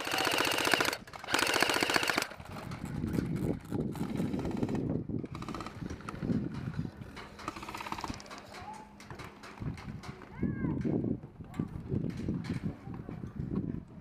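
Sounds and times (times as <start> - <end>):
airsoft guns firing bursts: 0.0 - 2.5, 4.0 - 6.0, 7.5 - 8.2.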